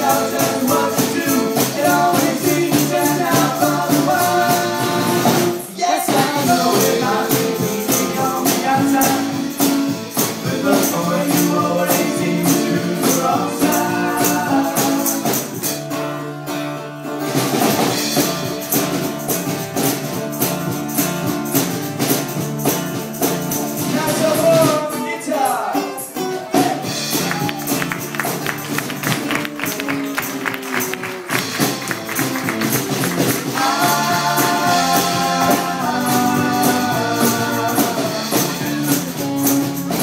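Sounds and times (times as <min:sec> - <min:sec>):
steady percussion beat: 0:00.0 - 0:15.9, 0:17.4 - 0:40.0
pitched instruments: 0:26.0 - 0:40.0.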